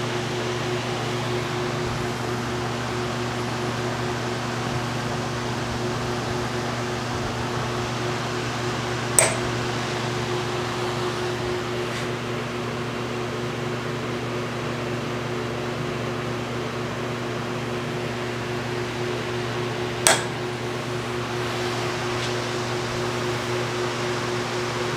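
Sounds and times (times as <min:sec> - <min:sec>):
motor hum: 0:00.0 - 0:13.6, 0:17.2 - 0:24.9
sharp click: 0:09.2 - 0:09.6, 0:20.0 - 0:20.4.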